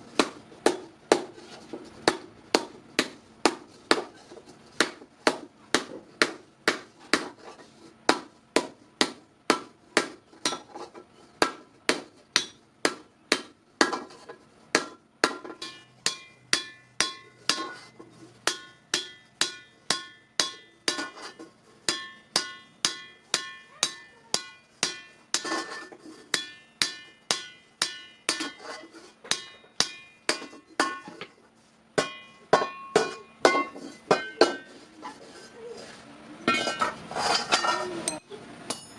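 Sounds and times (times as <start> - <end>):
hammer striking metal: 11.4 - 14.0, 14.8 - 31.2, 32.0 - 34.7, 36.5 - 38.9.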